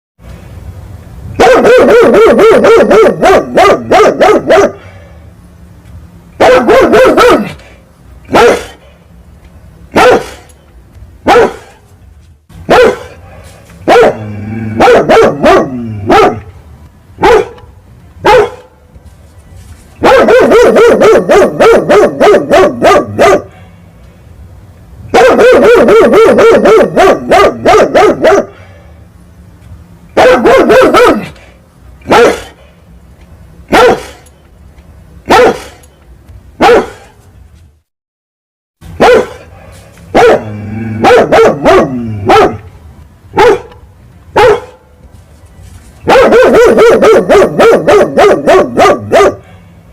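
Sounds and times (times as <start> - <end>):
big dog barking angrily: 1.4 - 4.8, 6.4 - 9.0, 9.9 - 10.6, 11.2 - 11.8, 12.6 - 16.5, 17.2 - 18.8, 20.0 - 23.7, 25.1 - 28.6, 30.1 - 32.6, 33.7 - 34.2, 35.2 - 35.8, 36.6 - 37.2, 38.9 - 42.7, 43.3 - 44.9, 46.0 - 49.6.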